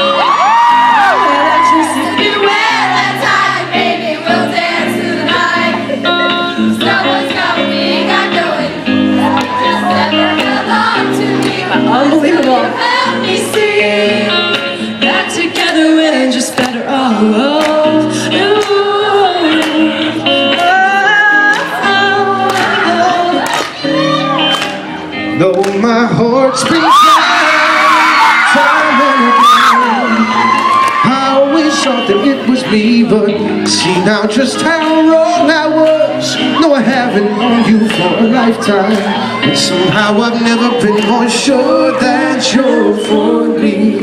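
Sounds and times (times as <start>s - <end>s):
live band playing chords: 0.0s - 44.0s
voices singing: 1.0s - 24.8s, 25.4s - 44.0s
strummed instrumental accompaniment: 2.0s - 26.2s.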